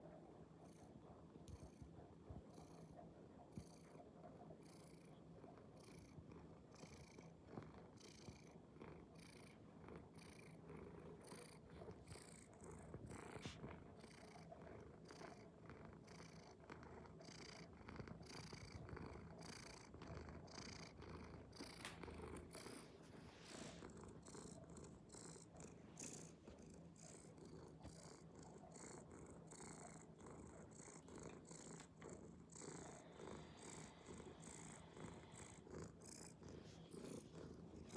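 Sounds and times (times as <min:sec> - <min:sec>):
cat purring: 0:00.0 - 0:37.9.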